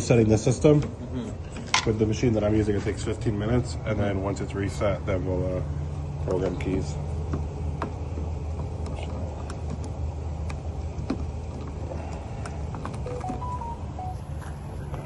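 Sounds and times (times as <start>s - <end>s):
low motor hum: 0.0s - 15.0s
short rising beeps: 13.0s - 14.4s.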